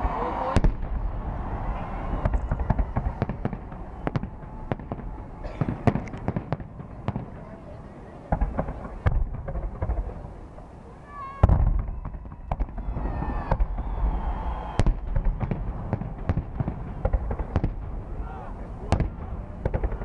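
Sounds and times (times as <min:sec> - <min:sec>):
heavy firework boom: 0:00.0 - 0:07.3, 0:11.4 - 0:18.3
fireworks bangs and pops: 0:01.6 - 0:07.5, 0:08.3 - 0:10.4, 0:11.4 - 0:20.0.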